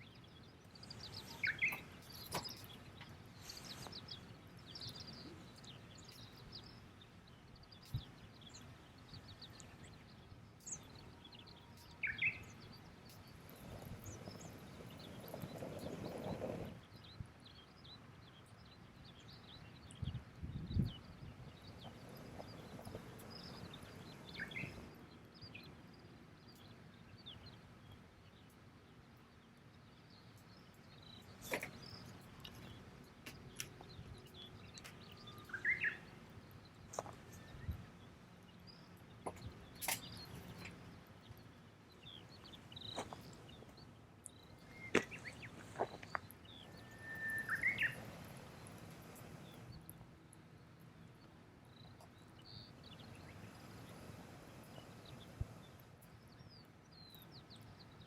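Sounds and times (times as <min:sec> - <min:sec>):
campfire crackling and popping: 0:00.0 - 0:17.0, 0:21.3 - 0:25.4, 0:29.6 - 0:56.1
small birds chirping: 0:00.0 - 0:58.0.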